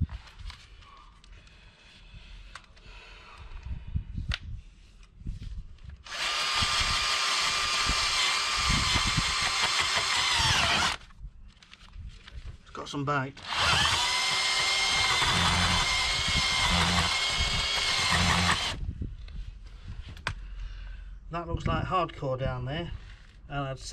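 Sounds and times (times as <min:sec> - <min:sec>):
battery drill boring into clay: 0:06.0 - 0:11.1, 0:13.4 - 0:18.8.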